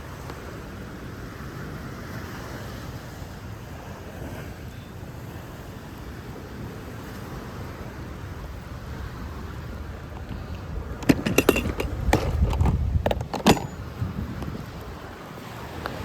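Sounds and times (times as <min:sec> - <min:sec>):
wind rumbling on microphone: 0:07.7 - 0:16.0
sharp clicks and knocks: 0:10.2 - 0:13.8.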